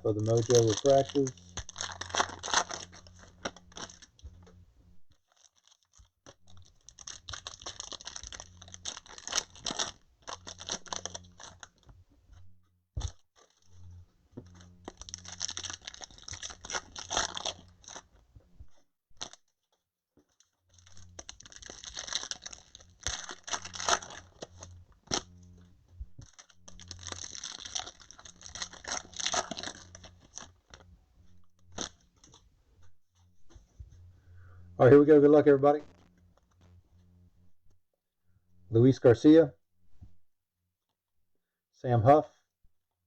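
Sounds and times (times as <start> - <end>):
foil wrappers crinkling and tearing: 0.0 - 4.6, 5.2 - 11.9, 14.4 - 18.1, 19.2 - 19.4, 20.4 - 25.6, 26.2 - 30.8, 31.6 - 32.4.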